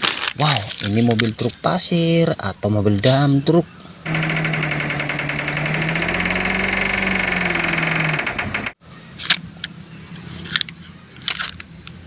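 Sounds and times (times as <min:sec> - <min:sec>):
pulsing engine buzz: 0:04.1 - 0:08.8.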